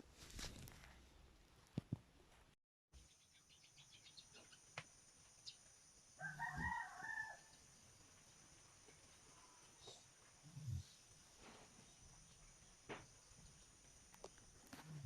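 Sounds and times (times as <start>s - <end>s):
animal call: 6.2s - 7.5s.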